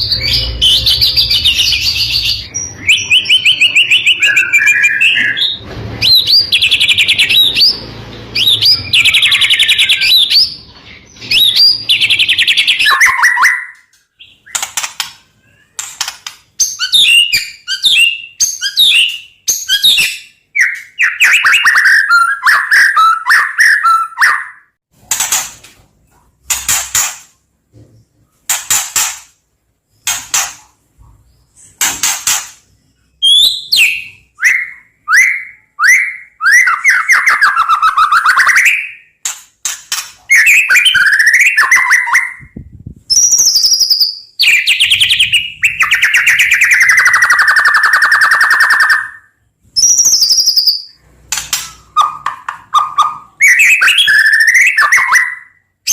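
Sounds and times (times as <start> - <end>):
bird harsh rasping notes: 0.0 - 14.8.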